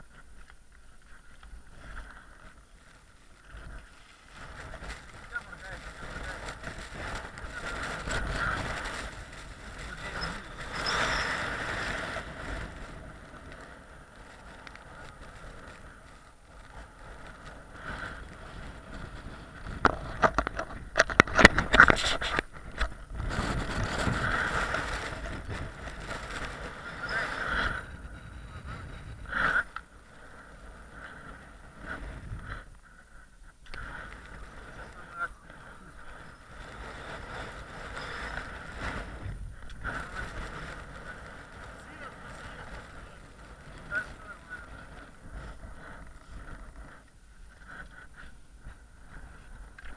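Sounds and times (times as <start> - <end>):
blizzard wind buffeting microphone: 0.0 - 49.9
crackling knocks: 19.6 - 26.5.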